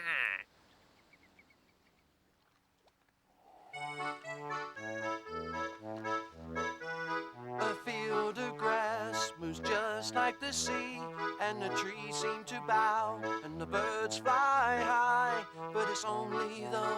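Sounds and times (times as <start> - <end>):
concertina playing: 3.8 - 16.9.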